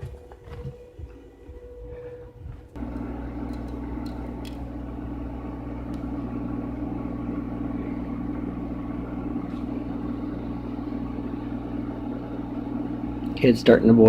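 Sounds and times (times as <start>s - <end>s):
hot-air blower humming: 0.0s - 14.0s.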